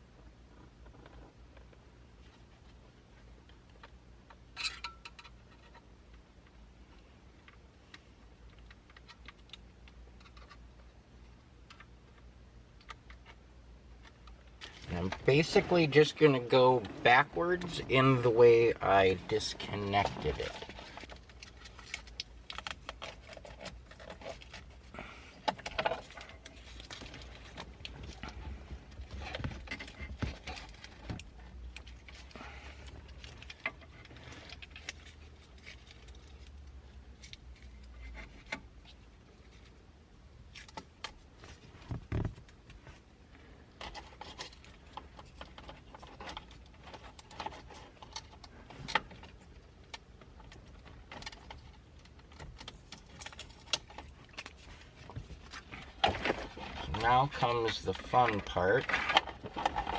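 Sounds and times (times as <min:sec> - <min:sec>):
plastic parts clicking and rustling: 0:00.6 - 0:06.6, 0:07.3 - 0:59.9.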